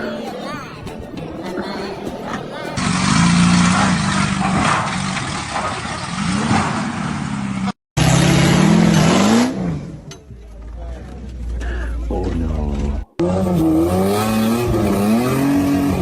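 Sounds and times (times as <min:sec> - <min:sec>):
engine revving hard: 0:02.8 - 0:10.1, 0:13.2 - 0:16.0.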